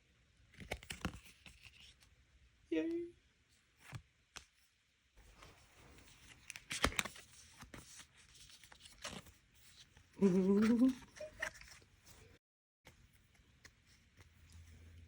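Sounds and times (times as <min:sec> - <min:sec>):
plastic and foil packs crinkling: 0:05.3 - 0:11.9
person humming: 0:10.2 - 0:11.5.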